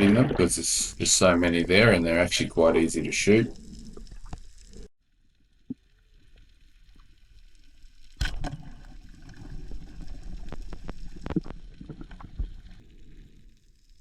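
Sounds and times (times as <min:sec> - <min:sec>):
muffled underwater water movement: 0:00.0 - 0:14.0
sharp crack: 0:08.1 - 0:08.9.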